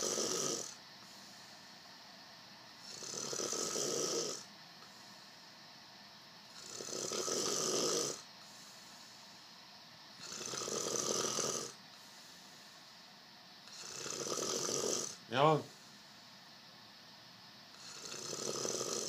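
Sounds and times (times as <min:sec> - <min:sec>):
person snoring: 0:00.0 - 0:00.8, 0:02.8 - 0:04.5, 0:06.5 - 0:09.4, 0:10.2 - 0:12.4, 0:13.6 - 0:15.9, 0:17.7 - 0:19.0
quiet breathing: 0:00.0 - 0:05.8, 0:06.5 - 0:16.6.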